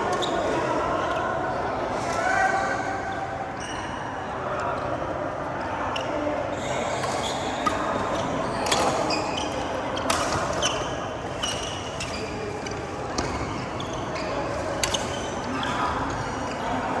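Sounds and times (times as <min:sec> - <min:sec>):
sneakers squeaking on court floor: 0:06.0 - 0:16.8.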